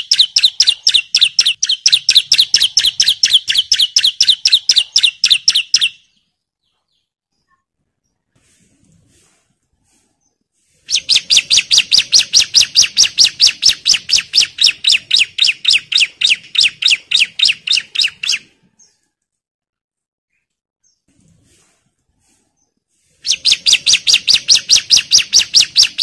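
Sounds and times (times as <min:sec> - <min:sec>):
bird calling sharp notes: 0:00.0 - 0:06.2, 0:10.8 - 0:18.6, 0:23.2 - 0:26.0.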